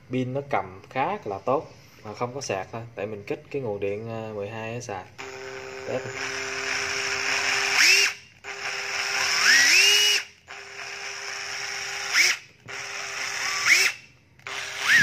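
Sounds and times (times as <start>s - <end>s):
cordless drill motor whine: 5.2s - 15.0s.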